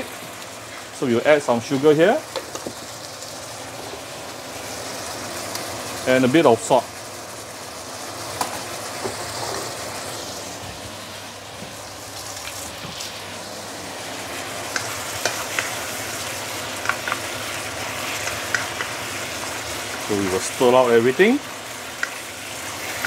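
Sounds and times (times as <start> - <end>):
chicken sizzling in a wok: 0.0 - 23.0.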